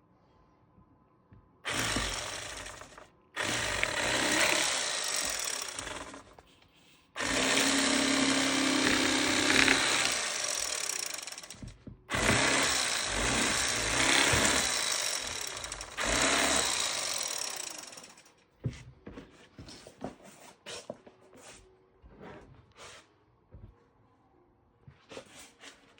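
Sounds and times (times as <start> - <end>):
electric fillet knife buzzing: 1.7 - 6.3, 7.2 - 18.2.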